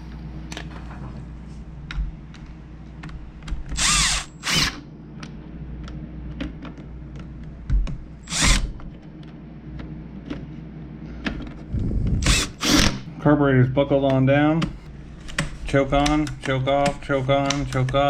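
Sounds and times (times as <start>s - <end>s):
power drill whirring: 3.8s - 4.8s, 8.2s - 8.8s, 12.2s - 13.0s.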